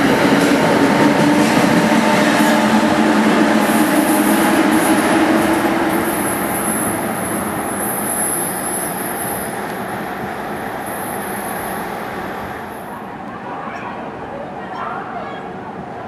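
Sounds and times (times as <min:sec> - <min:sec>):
train wheels rumbling on track: 0:00.0 - 0:13.3
high wheel squeal: 0:06.0 - 0:09.7.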